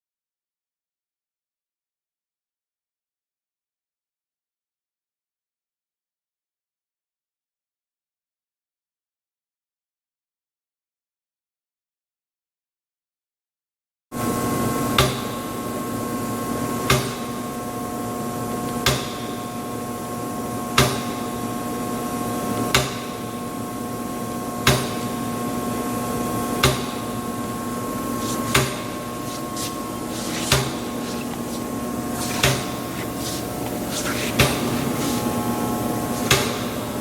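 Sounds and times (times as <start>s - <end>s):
grinder humming: 27.9s - 37.0s.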